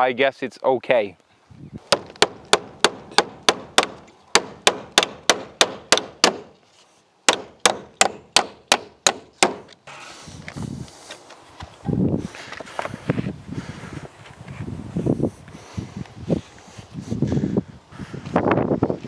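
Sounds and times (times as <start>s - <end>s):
hammer striking nails into wood: 1.8s - 6.6s, 7.3s - 9.8s.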